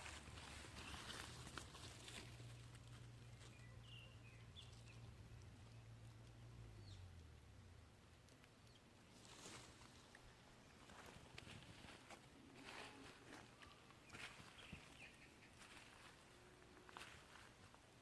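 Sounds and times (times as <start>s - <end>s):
soft rustle: 0.0s - 6.3s, 9.0s - 17.9s
bird chirps: 2.5s - 7.2s, 13.5s - 16.2s.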